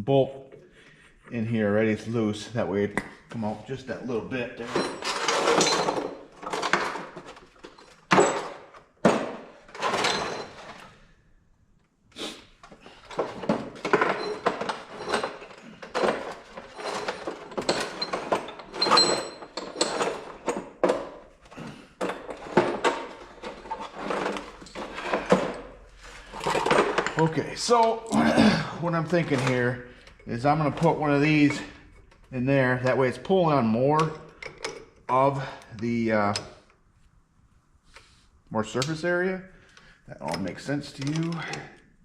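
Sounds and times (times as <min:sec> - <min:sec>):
metal tools clanking: 0:04.6 - 0:10.9, 0:13.0 - 0:32.7.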